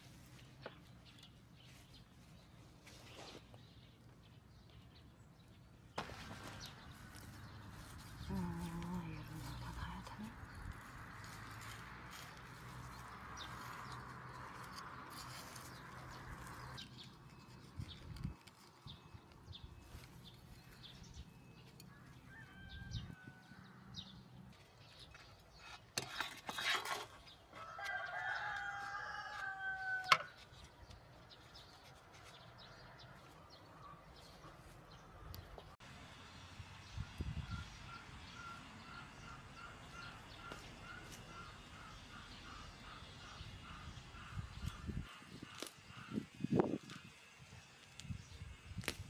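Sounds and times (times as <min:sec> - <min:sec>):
rooster crowing: 0:22.2 - 0:24.0, 0:27.6 - 0:30.3.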